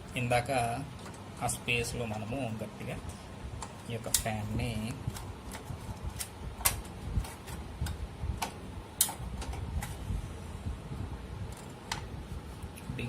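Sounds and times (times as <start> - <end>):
sharp clicks and small knocks: 11.5 - 12.1.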